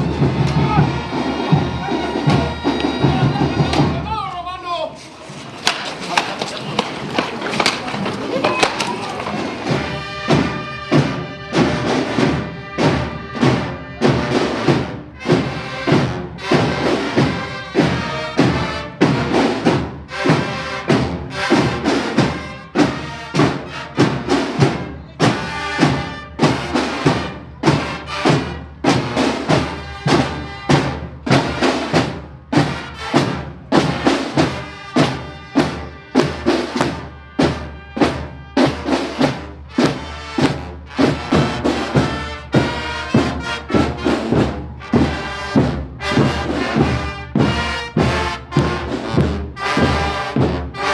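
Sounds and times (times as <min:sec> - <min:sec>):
strong even drum beat: 0:00.0 - 0:04.3, 0:09.4 - 0:50.9
drum and brass band playing: 0:00.0 - 0:50.9.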